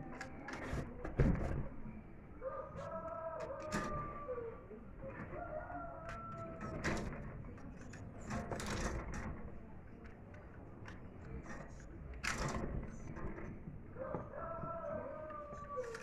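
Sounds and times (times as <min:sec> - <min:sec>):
rooster crowing: 0:02.4 - 0:04.6, 0:14.0 - 0:16.0.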